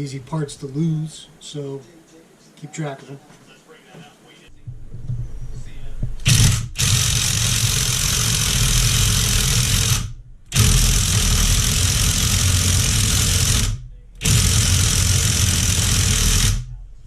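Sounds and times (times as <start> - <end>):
impact wrench bursts: 6.2 - 16.8.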